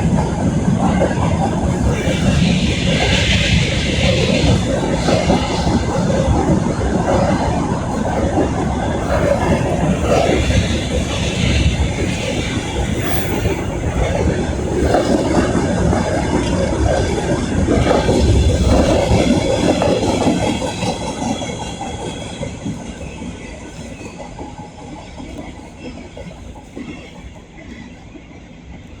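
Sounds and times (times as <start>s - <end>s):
train rolling past on rails: 0.0s - 29.0s.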